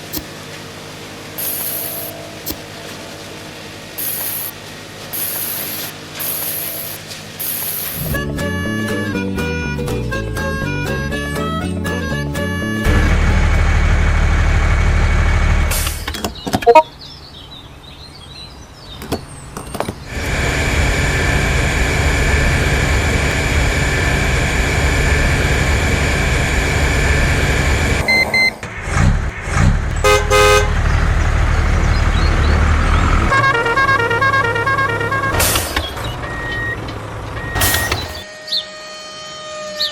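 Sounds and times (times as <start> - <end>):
vehicle engine rumbling: 0.0 - 18.0, 18.9 - 38.3
repeating beep: 16.6 - 16.9
short horn toots: 30.0 - 30.8
sharp bang: 37.6 - 38.3.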